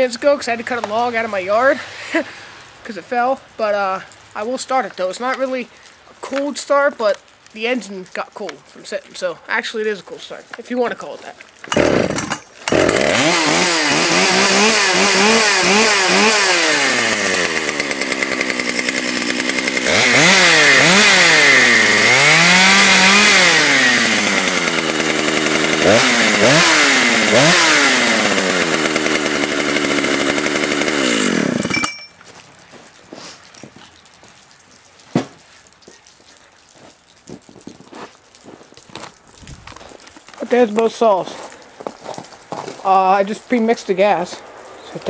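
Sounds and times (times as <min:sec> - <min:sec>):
chainsaw engine revving and idling: 0:11.7 - 0:31.9.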